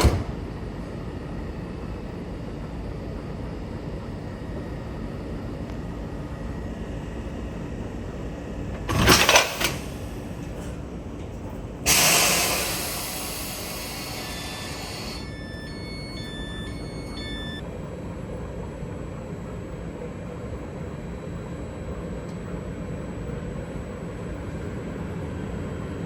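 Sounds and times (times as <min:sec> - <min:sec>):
train engine low rumble: 0:00.0 - 0:26.0
compressed air hiss: 0:11.9 - 0:15.2.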